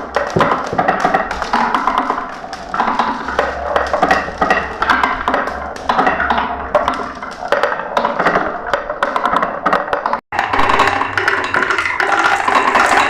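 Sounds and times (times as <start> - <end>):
glass marbles clattering down track: 10.4 - 13.0.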